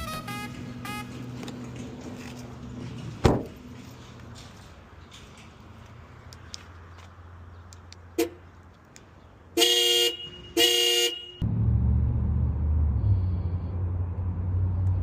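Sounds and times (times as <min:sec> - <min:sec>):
car horn blasts: 0:00.0 - 0:01.2, 0:09.6 - 0:11.5.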